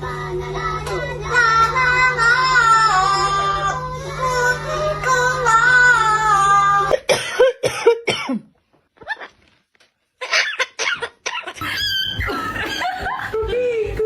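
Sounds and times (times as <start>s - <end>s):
parrot cough-like calls: 10.2s - 12.8s
music with steady beat: 12.2s - 14.0s.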